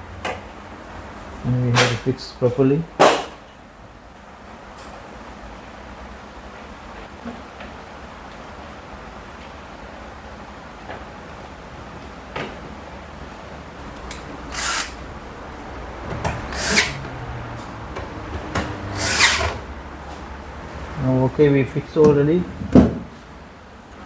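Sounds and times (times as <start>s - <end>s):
power drill driving screws: 14.1s - 15.0s, 16.2s - 17.1s, 18.6s - 19.6s.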